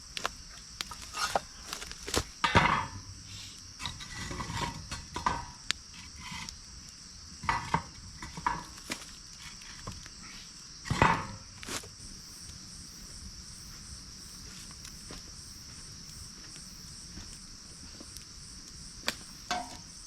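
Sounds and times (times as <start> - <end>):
crickets chirping: 0.0 - 20.0
scrapes and rustles: 0.8 - 6.6, 7.4 - 12.0
utensils clinking and knocking: 19.5 - 19.8.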